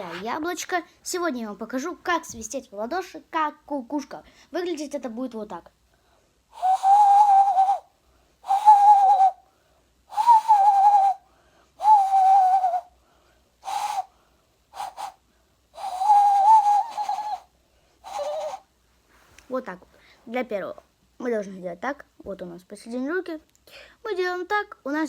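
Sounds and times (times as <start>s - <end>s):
hand whistle hooting: 6.6s - 7.8s, 8.5s - 9.4s, 10.1s - 11.2s, 11.8s - 12.9s, 13.6s - 14.1s, 14.8s - 15.2s, 15.8s - 18.6s.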